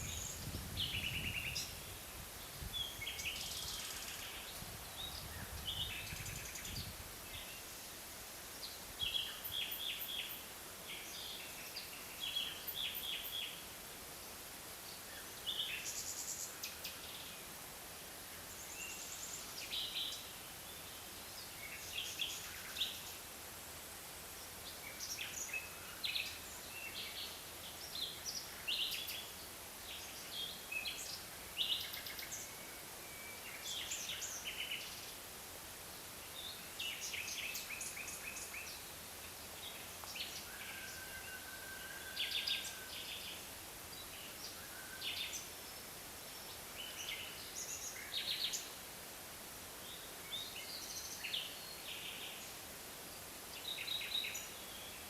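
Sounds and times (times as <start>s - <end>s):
songbirds chirping and trilling: 0.0s - 17.5s, 24.4s - 35.3s, 36.0s - 48.9s
faint steady hiss: 0.0s - 55.0s.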